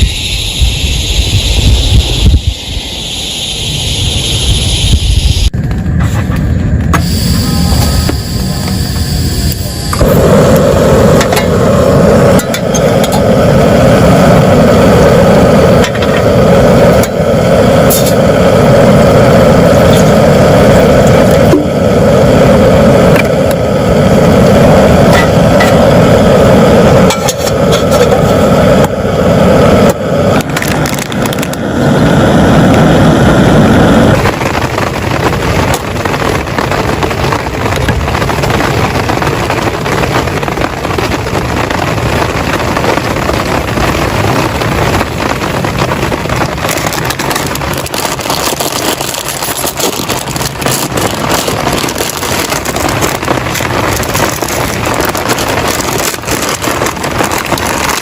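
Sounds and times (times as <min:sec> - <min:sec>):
heavy rain on a tent: 0:10.0 - 0:58.0.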